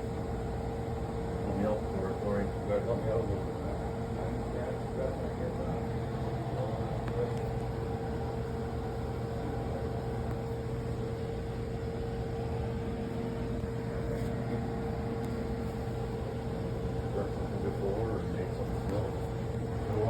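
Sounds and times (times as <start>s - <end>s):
mechanical hum and hiss: 0.0s - 20.0s.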